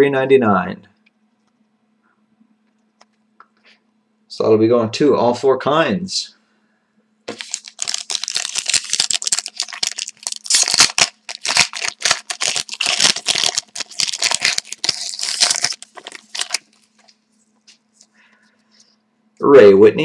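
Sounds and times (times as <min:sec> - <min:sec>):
foil wrapper tearing and crinkling: 0:07.3 - 0:17.2.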